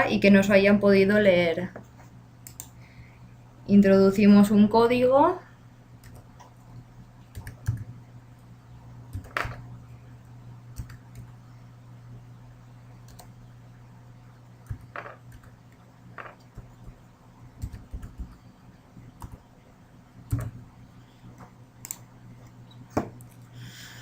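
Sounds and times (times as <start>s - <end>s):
low steady hum: 0.0s - 24.0s
keyboard keystrokes: 9.1s - 9.6s, 20.3s - 20.6s.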